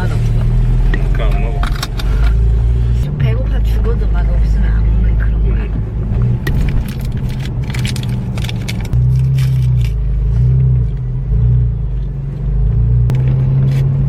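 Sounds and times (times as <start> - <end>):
car engine and road noise: 0.0 - 14.0
crackling and rustling: 6.1 - 11.1.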